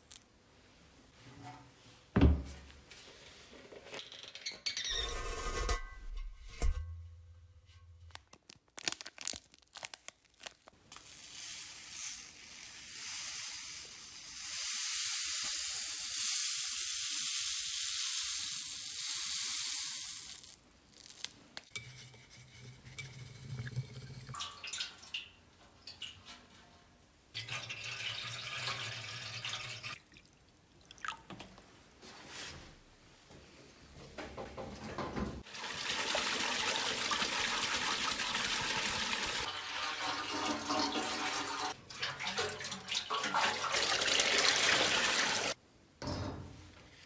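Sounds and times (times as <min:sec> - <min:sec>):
steady hiss: 0:10.9 - 0:21.6.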